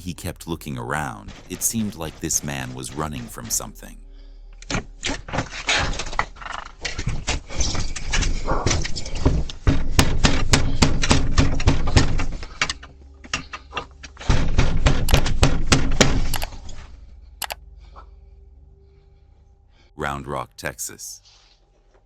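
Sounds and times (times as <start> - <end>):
sharp knocks and clatters: 4.6 - 16.6.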